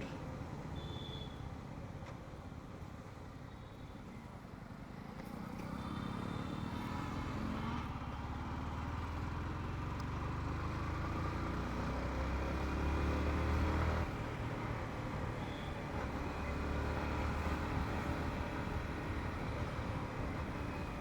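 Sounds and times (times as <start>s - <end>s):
motorbike engine and road noise: 4.6s - 21.0s.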